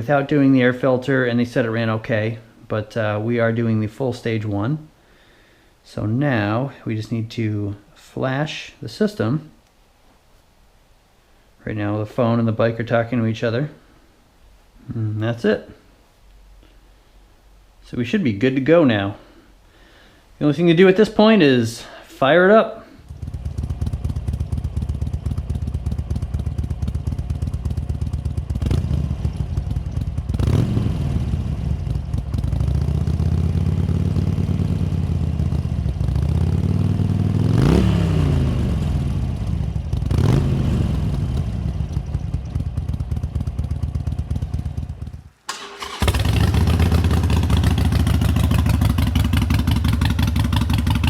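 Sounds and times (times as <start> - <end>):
motorcycle engine idling and revving: 23.0 - 51.0.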